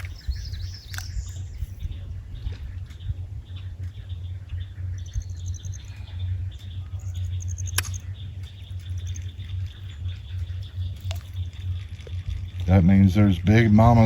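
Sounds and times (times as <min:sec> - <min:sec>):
birds chirping in high trills: 0:00.0 - 0:14.0
steady low hum: 0:00.0 - 0:14.0
sharp click: 0:07.4 - 0:08.1.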